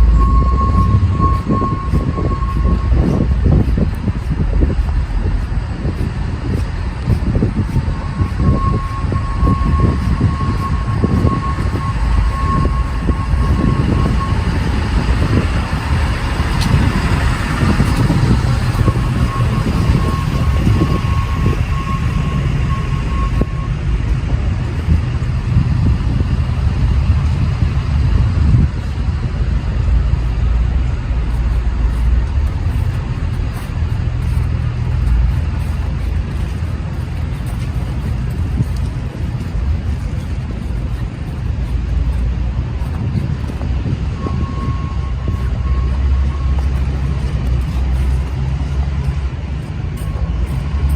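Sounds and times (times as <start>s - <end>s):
high electronic beeping: 0.0s - 3.7s, 7.9s - 15.4s, 16.8s - 23.8s
low rumble of street traffic: 0.0s - 50.9s.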